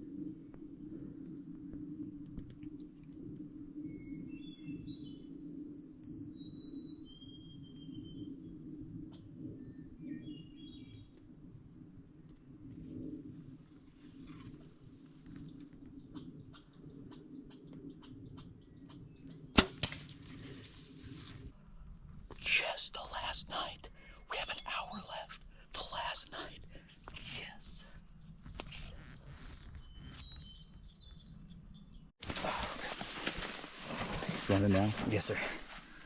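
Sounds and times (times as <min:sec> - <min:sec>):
songbirds chirping and singing: 0:04.0 - 0:11.7, 0:20.2 - 0:35.6.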